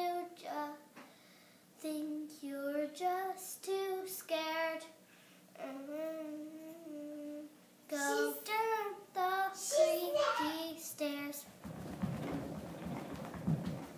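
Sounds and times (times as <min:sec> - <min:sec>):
child singing unaccompanied: 0:00.0 - 0:01.0, 0:01.8 - 0:05.0, 0:05.6 - 0:11.5
child breathing: 0:01.0 - 0:01.7, 0:05.1 - 0:05.5.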